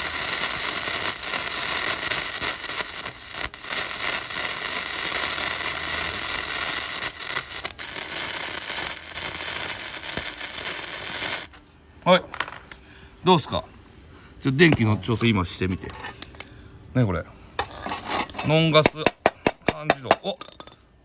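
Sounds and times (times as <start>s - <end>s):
welding arc crackling: 0.0s - 11.6s.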